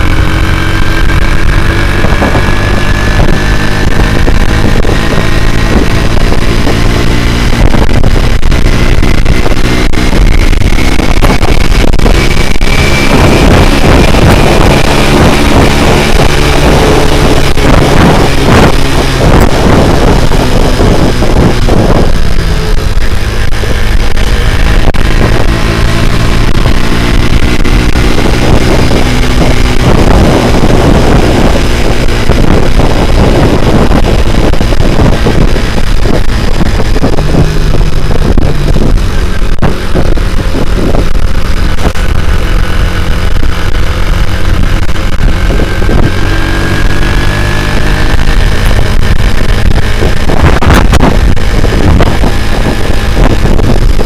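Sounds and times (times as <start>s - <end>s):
motorcycle engine accelerating: 0.0s - 54.0s
wind buffeting microphone: 0.0s - 54.0s.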